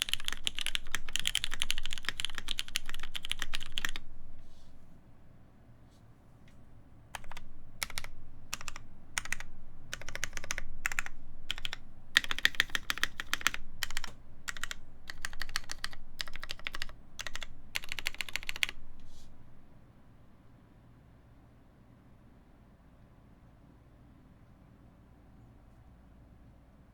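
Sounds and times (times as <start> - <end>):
mechanical keyboard typing: 0.0 - 4.4, 7.1 - 19.5.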